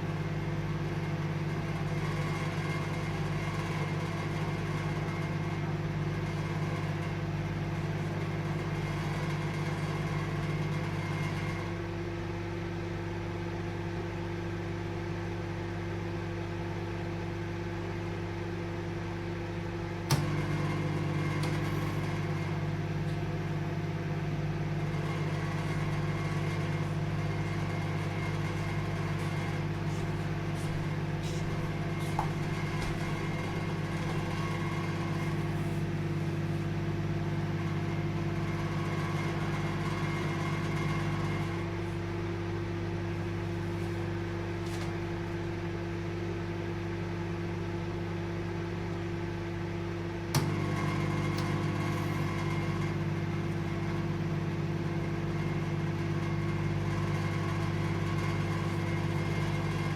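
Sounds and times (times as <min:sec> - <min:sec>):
microwave oven humming: 0:00.0 - 0:59.9
microwave relay click: 0:20.1 - 0:20.5.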